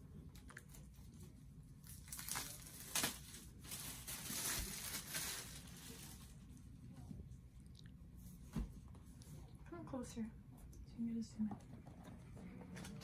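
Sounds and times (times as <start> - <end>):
cardboard and paper crinkling: 1.8 - 6.6.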